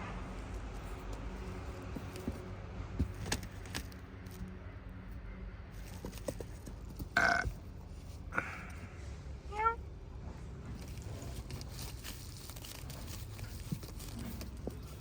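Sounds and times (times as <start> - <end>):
throaty burp-like vocal sound: 7.2 - 7.5.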